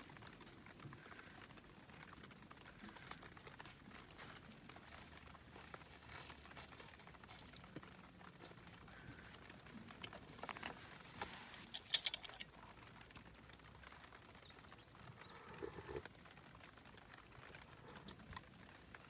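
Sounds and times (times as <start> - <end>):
bird chirp: 14.3 - 16.1.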